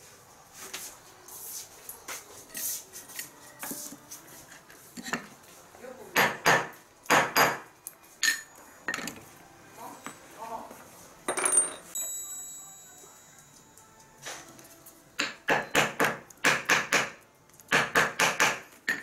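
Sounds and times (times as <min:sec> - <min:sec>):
loud sharp knocks: 0:15.5 - 0:18.6.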